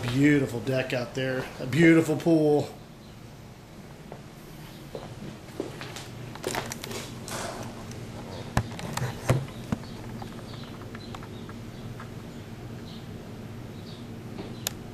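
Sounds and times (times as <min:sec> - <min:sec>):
steady low hum: 0:00.0 - 0:14.9
footsteps: 0:04.1 - 0:07.8.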